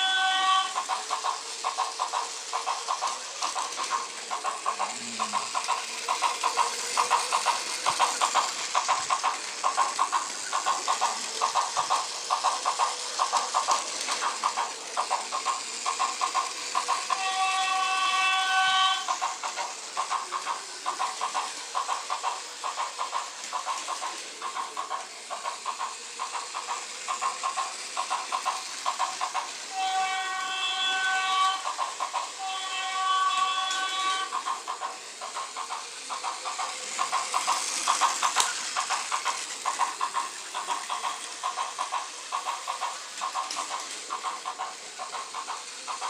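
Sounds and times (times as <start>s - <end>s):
toy train horn chord: 0.0s - 0.9s, 17.1s - 19.1s, 29.7s - 31.8s, 32.4s - 34.4s
toy train clickety-clack: 0.0s - 46.0s.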